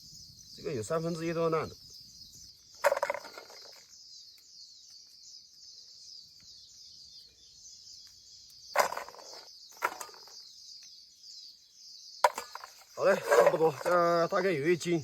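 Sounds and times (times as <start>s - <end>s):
chestnuts clattering: 2.8s - 3.9s, 8.8s - 10.4s, 12.2s - 14.4s.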